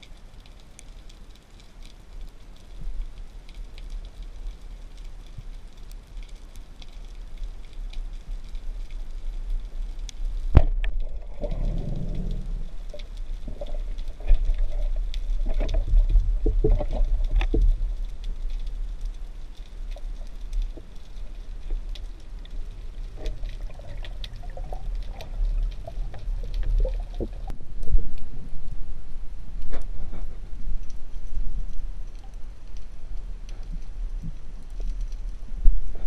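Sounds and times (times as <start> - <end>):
underwater rumble of water: 0.0 - 36.0
sharp clicks underwater: 9.6 - 27.5
muffled underwater swishing: 10.6 - 17.6.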